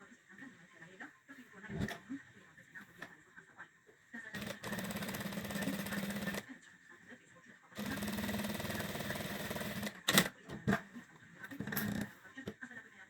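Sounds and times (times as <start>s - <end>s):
sewing machine stitching: 4.4s - 6.5s, 7.8s - 10.8s, 11.5s - 12.2s.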